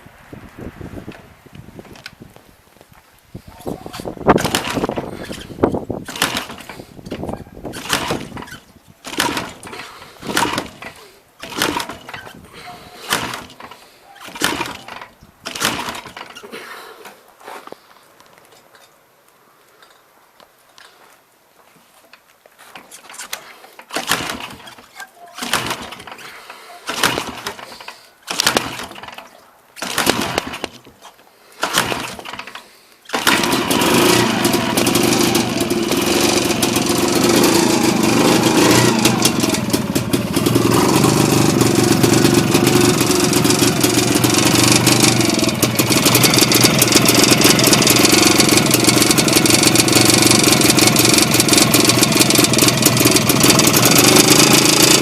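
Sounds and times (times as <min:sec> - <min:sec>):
engine cranking and starting: 0:04.3 - 0:16.5, 0:22.8 - 0:55.0.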